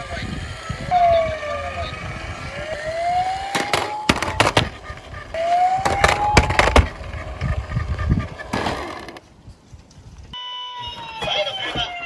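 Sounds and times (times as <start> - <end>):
toy cars rolling and clattering: 0.0 - 9.2
rising siren tone: 0.7 - 7.0
sharp knocks: 3.5 - 4.8.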